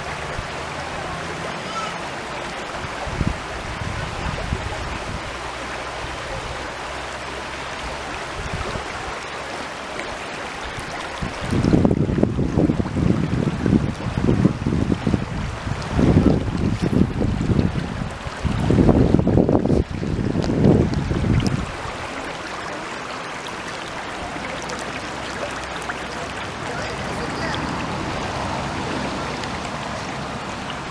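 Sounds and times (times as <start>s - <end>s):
stream water flowing: 0.0s - 30.9s
wind buffeting microphone: 2.7s - 5.5s, 7.8s - 9.1s, 10.6s - 22.4s.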